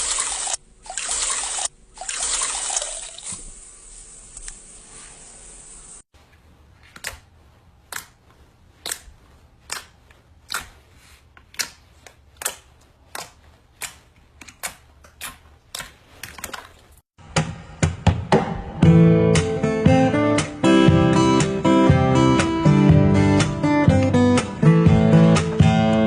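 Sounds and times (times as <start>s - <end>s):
strummed acoustic guitar music: 18.8s - 26.0s.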